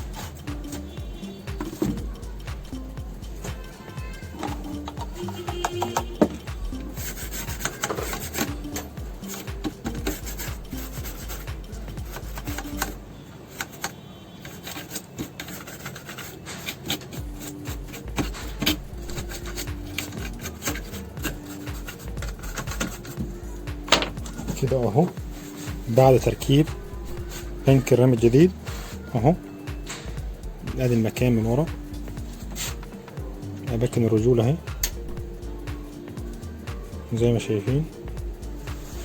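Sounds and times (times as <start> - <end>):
rubbing and scraping: 0.0 - 35.3, 37.4 - 39.0
faint background music: 0.0 - 39.0.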